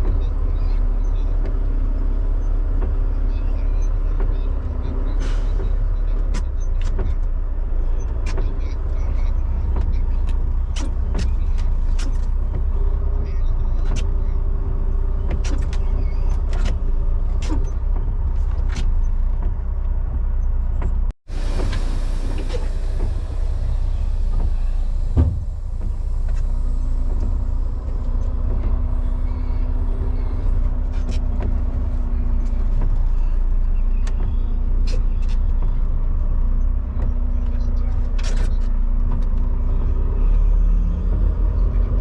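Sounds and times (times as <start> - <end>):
truck engine droning in cab: 0.0 - 42.0.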